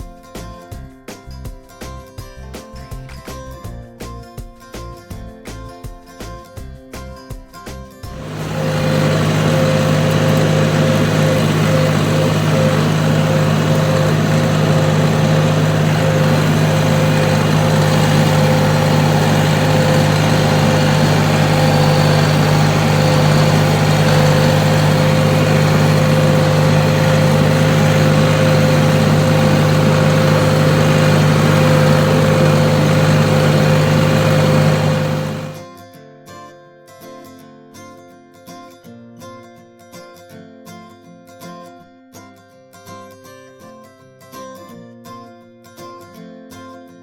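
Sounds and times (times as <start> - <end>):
steady engine whine: 8.2 - 35.6
tractor engine running: 8.2 - 35.6.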